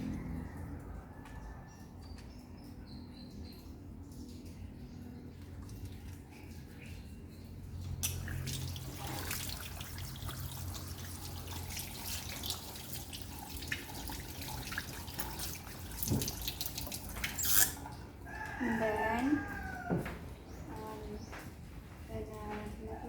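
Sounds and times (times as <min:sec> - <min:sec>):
water running from a tap: 0:07.8 - 0:19.8
hands rinsed under water: 0:08.0 - 0:18.0.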